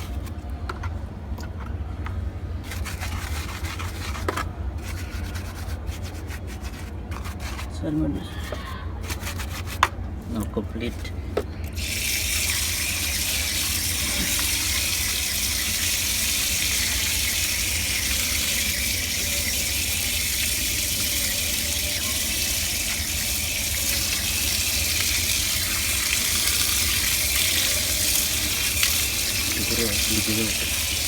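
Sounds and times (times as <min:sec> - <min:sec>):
tap water running: 0:11.6 - 0:31.0.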